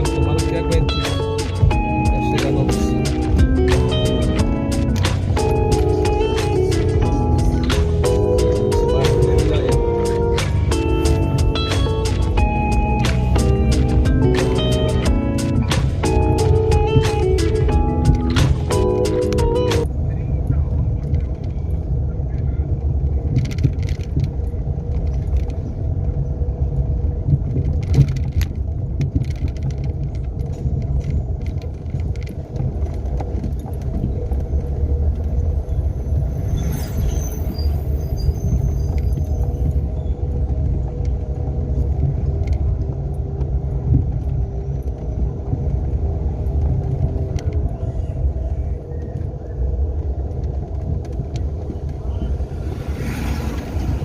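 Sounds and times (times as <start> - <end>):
car engine rumble and road noise: 0.0 - 54.0
high-pitched squeak: 36.1 - 39.8.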